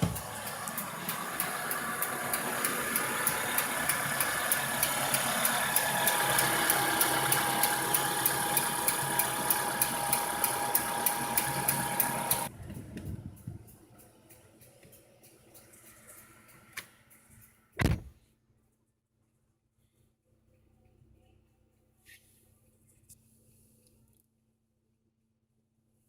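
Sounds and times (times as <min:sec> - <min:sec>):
car engine idling: 0:00.0 - 0:12.5
gas injectors ticking loudly: 0:00.0 - 0:12.5.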